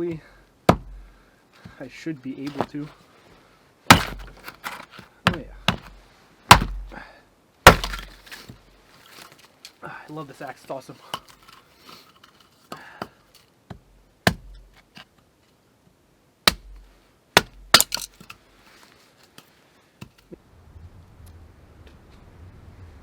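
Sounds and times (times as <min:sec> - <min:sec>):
axe chopping wood: 0:00.0 - 0:01.0, 0:02.4 - 0:02.9, 0:03.9 - 0:07.0, 0:07.6 - 0:08.6, 0:14.3 - 0:14.7, 0:16.5 - 0:18.4.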